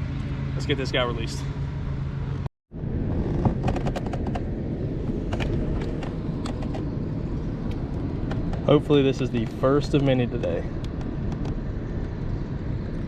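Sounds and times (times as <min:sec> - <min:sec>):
steady low rumble: 0:00.0 - 0:13.0
sharp clicks and knocks: 0:03.3 - 0:04.5, 0:05.2 - 0:06.9, 0:07.6 - 0:08.8, 0:09.4 - 0:12.2.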